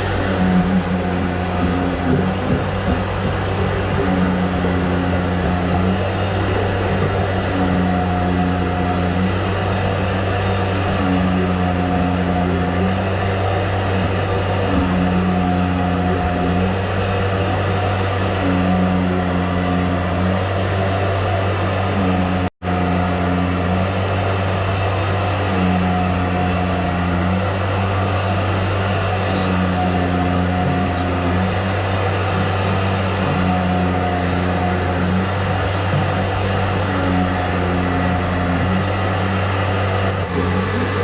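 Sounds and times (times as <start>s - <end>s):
electric motor humming: 25.4s - 41.0s.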